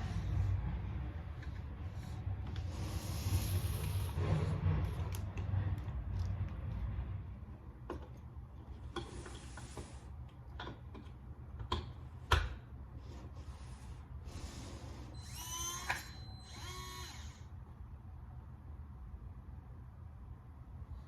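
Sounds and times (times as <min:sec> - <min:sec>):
lock motor whirring: 0:15.1 - 0:17.5.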